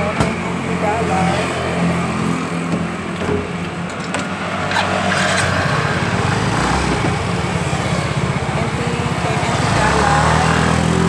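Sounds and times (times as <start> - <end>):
vehicle engine running: 0.0 - 11.0.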